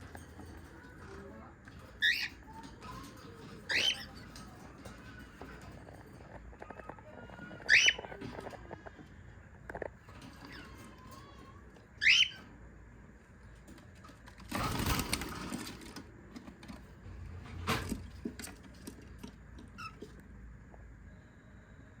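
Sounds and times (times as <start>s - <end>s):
cockatiel chirping: 7.6s - 8.2s, 12.0s - 12.4s.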